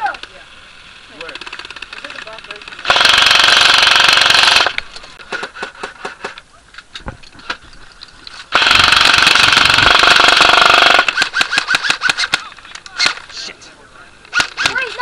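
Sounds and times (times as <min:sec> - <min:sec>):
rapid full-auto gun burst: 0:01.3 - 0:04.8, 0:08.5 - 0:13.1.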